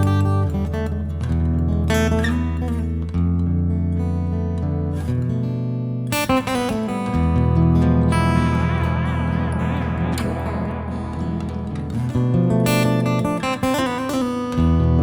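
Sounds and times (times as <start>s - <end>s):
bass guitar: 0.0s - 5.5s, 6.1s - 15.0s
clean guitar chords: 6.0s - 15.0s.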